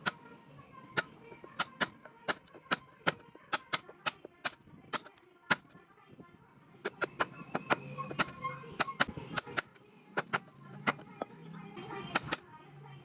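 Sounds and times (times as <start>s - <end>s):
sharp taps: 1.0s - 5.7s.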